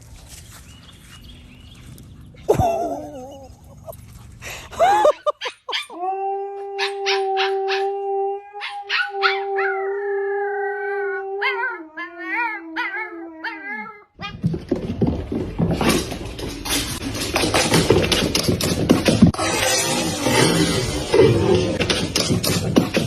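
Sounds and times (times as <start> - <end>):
dog howling: 5.9 - 14.1.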